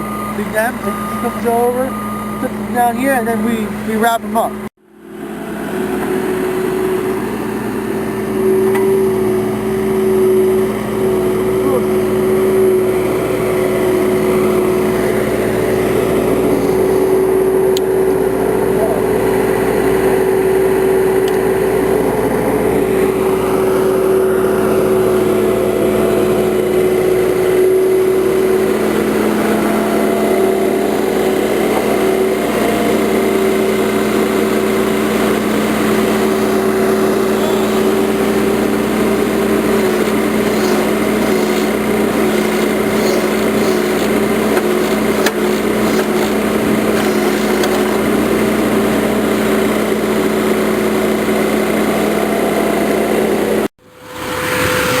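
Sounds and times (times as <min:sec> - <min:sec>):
machine engine running: 0:05.2 - 0:19.8, 0:33.6 - 0:50.7.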